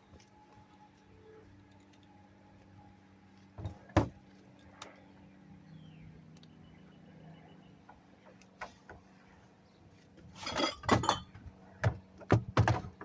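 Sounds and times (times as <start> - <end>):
glass clinking and rattling: 10.4 - 11.4.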